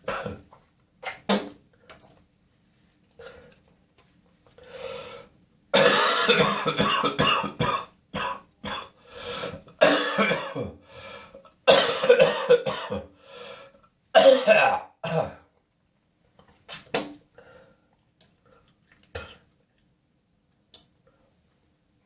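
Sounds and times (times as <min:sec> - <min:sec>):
man coughing: 0:05.8 - 0:08.9, 0:09.8 - 0:10.8, 0:11.7 - 0:13.1, 0:14.2 - 0:15.4.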